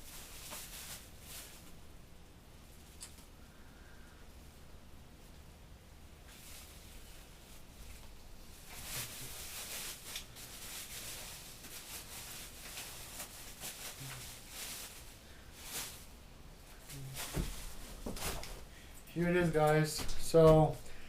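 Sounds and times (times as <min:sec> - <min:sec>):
bubble wrap crackling: 0:00.0 - 0:01.8, 0:06.2 - 0:16.1.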